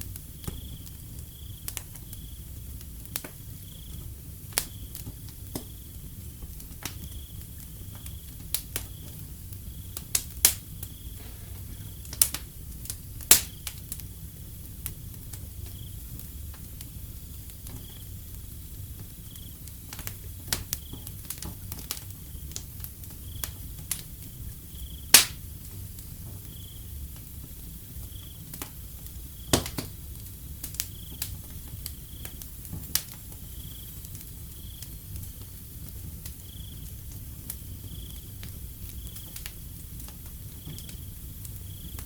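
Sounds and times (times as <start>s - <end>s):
wood fire crackling and popping: 0.0s - 42.0s
cricket trilling: 15.6s - 16.2s, 17.1s - 21.4s, 23.2s - 25.1s, 26.4s - 27.1s, 27.8s - 29.8s, 30.7s - 31.3s, 33.4s - 35.0s, 36.4s - 36.9s, 37.6s - 39.5s, 40.4s - 42.0s.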